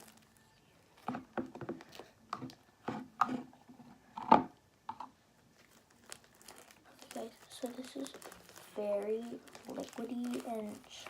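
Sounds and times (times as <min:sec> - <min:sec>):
slime squelching: 0:05.6 - 0:11.0.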